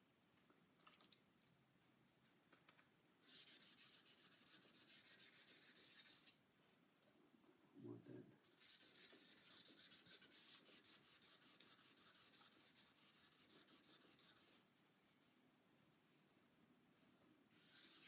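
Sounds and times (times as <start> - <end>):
sandpaper sanding strokes: 3.3 - 6.3, 8.5 - 14.6, 17.0 - 18.0.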